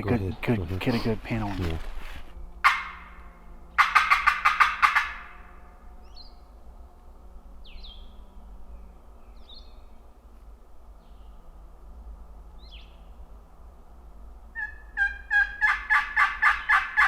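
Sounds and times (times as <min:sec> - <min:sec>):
turkey box call yelping: 0:14.6 - 0:17.0.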